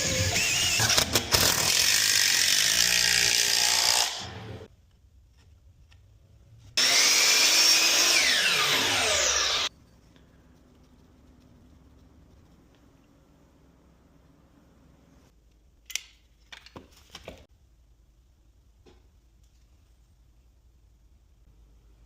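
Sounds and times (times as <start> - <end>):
power tool whining: 6.8 - 9.7.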